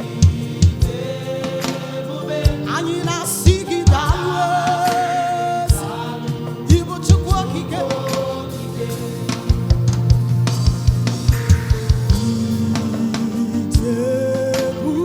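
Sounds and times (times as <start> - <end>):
choir singing gospel music: 0.0 - 15.0
live band playing: 0.0 - 15.0
drum hits: 3.4 - 4.4, 6.7 - 13.9.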